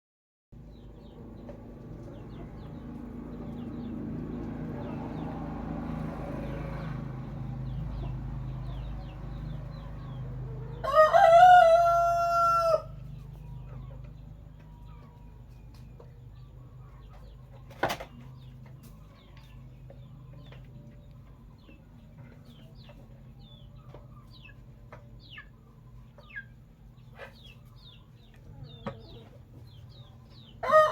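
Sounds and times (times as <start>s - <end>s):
rooster crowing: 10.7s - 13.0s, 30.6s - 30.9s.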